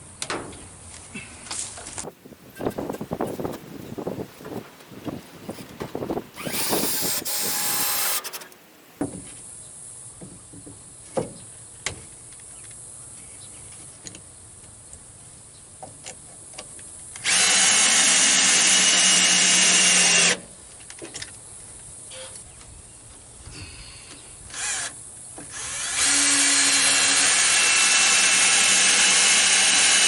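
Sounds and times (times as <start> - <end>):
power drill running: 4.4 - 9.0, 17.2 - 20.4, 24.5 - 24.9, 25.5 - 30.0.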